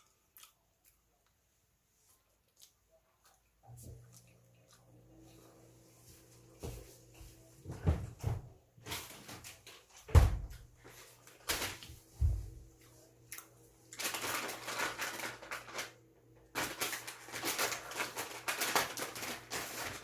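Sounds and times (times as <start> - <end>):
crackly rustling and chewing: 0.0 - 6.5, 10.8 - 20.0.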